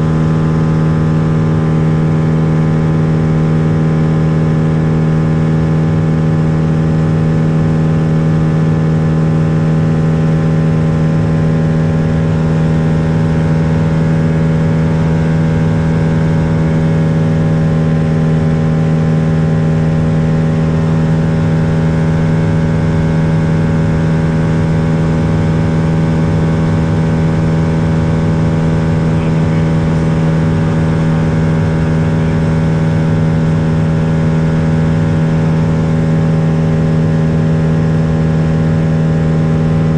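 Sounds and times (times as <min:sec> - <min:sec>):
propeller plane engine droning: 0:00.0 - 0:39.9.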